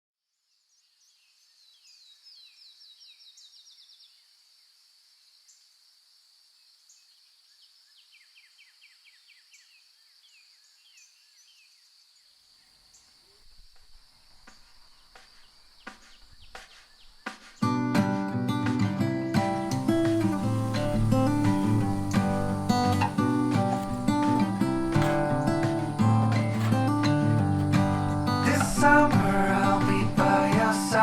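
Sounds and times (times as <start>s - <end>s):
high-pitched insect drone: 19.4s - 30.6s
bird singing falling notes: 19.5s - 30.3s.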